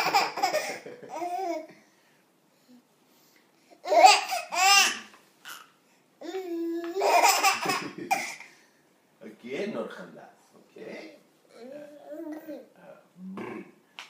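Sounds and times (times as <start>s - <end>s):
baby laughing and babbling: 0.0s - 1.7s, 3.8s - 8.5s, 11.5s - 12.8s.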